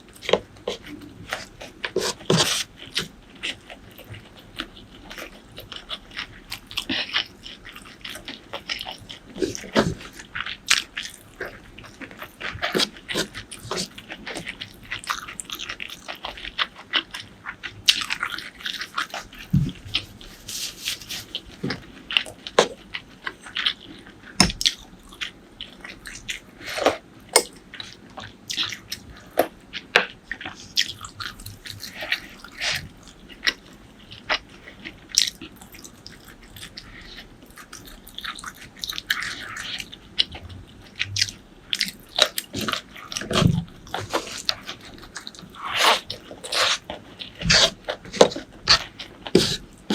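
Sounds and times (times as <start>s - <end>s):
chewing and biting: 20.9s - 49.9s.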